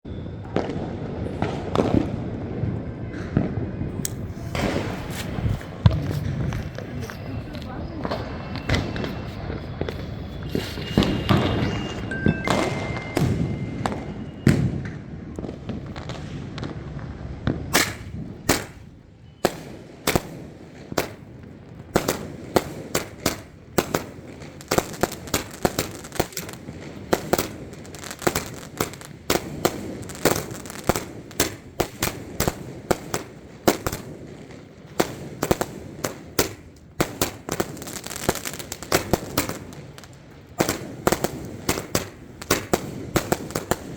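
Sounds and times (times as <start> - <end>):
firework shots banging: 0.5 - 2.4, 3.1 - 16.8, 17.7 - 43.9
steady high tones: 6.8 - 14.5.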